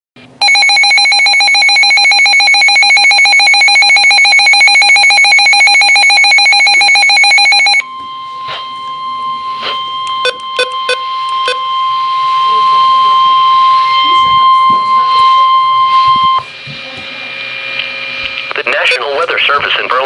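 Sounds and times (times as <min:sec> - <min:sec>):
steady warning alarm tone: 0:00.4 - 0:16.6
buzzy trilling alert tone: 0:00.5 - 0:16.4.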